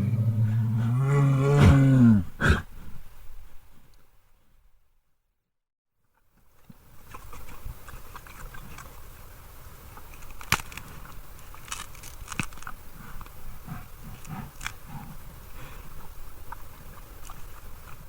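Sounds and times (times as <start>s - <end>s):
low rumbling: 0.0s - 2.6s
crunching and sharp clicks: 10.1s - 13.4s.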